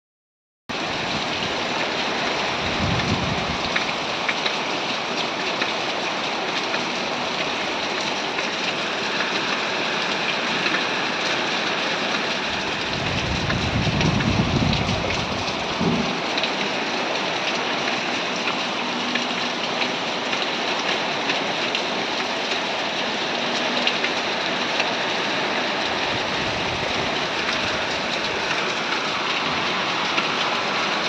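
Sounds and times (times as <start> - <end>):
heavy rain downpour: 0.7 - 31.0
low rumbles: 12.4 - 16.5.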